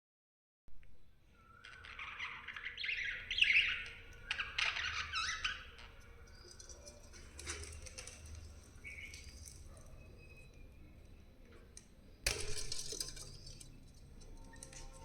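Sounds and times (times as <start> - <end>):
budgerigars chattering and warbling: 1.4 - 9.8.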